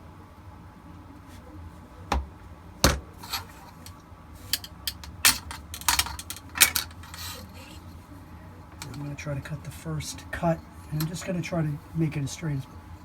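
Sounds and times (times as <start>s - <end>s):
metal ruler clicking on plastic: 4.5s - 7.7s.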